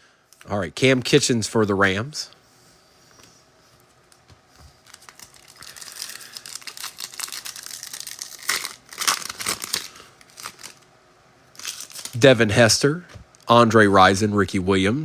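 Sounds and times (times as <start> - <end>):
foil wrapper ripping: 4.8 - 10.9, 11.5 - 12.3
foil wrapper tearing and crinkling: 4.8 - 10.9, 11.5 - 12.3.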